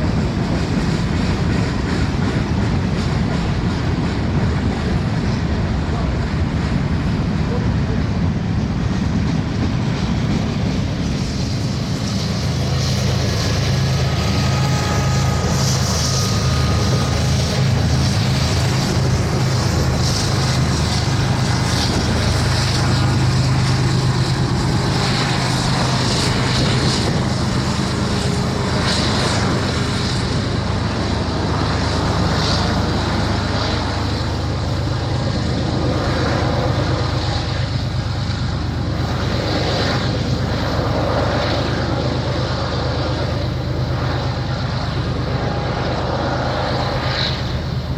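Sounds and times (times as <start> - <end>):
locomotive engine drone: 0.0 - 47.9
train hiss: 7.5 - 35.6.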